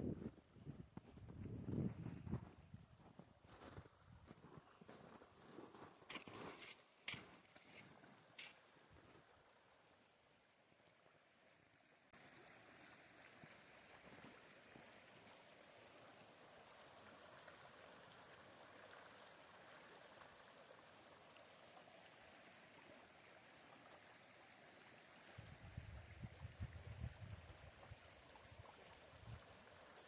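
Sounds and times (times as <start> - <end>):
river water flowing: 6.3 - 25.4, 27.4 - 30.0.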